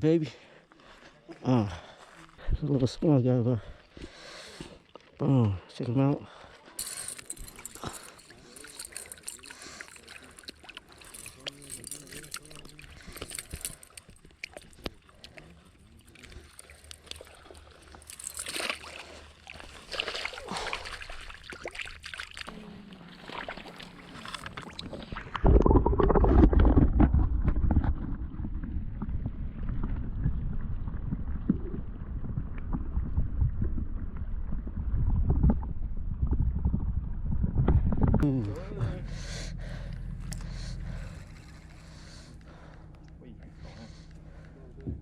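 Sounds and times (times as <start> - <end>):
loud low rumble: 29.2 - 45.0.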